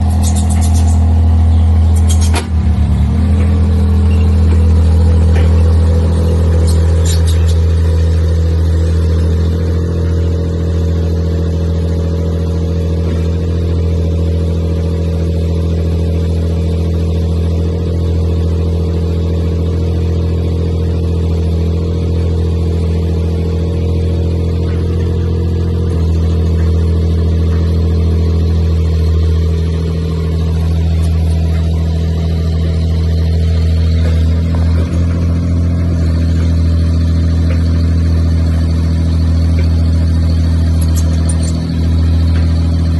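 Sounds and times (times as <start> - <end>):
engine running with low drone: 0.0 - 42.9
sharp clicks: 0.1 - 1.1.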